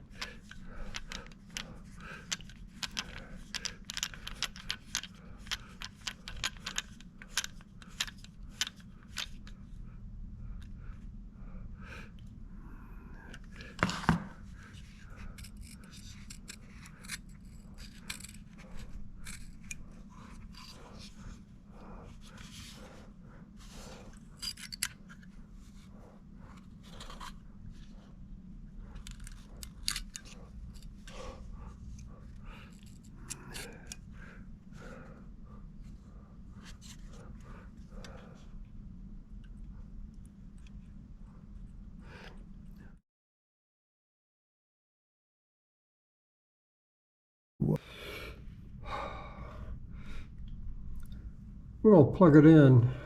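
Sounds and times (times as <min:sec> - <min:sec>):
screwdriver clicks and scrapes: 0:15.3 - 0:21.1, 0:24.4 - 0:25.3, 0:29.0 - 0:30.9.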